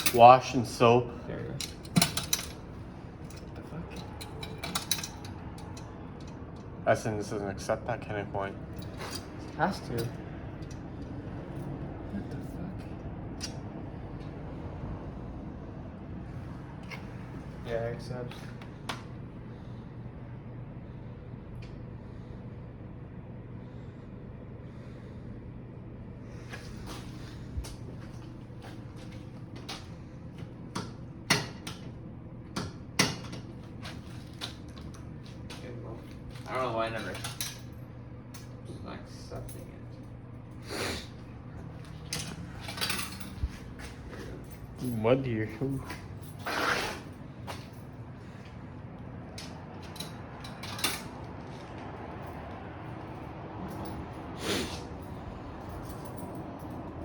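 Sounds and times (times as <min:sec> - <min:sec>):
steady low hum: 0:00.0 - 0:57.0
light mechanical clicks and clanks: 0:03.2 - 0:06.8.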